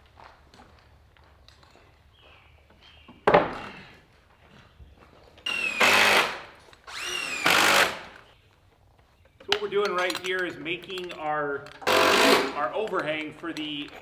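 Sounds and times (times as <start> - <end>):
impact driver driving screws: 5.5 - 8.3, 11.8 - 12.6.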